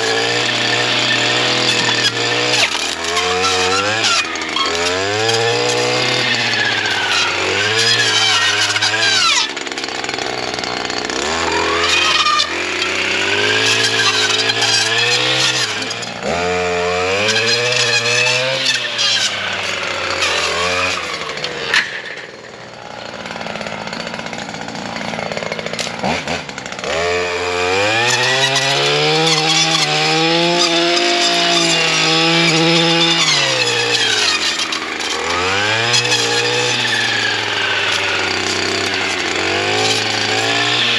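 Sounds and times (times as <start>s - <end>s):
brush cutter engine revving: 0.0s - 40.9s.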